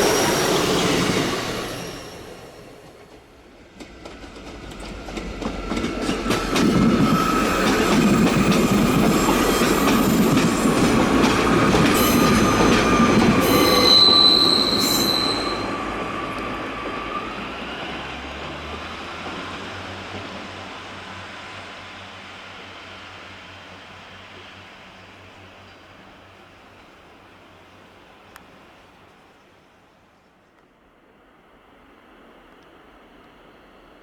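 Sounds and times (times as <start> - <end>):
high wheel squeal: 0.0 - 2.8, 6.2 - 18.0
train passing: 0.0 - 30.1, 30.8 - 34.0.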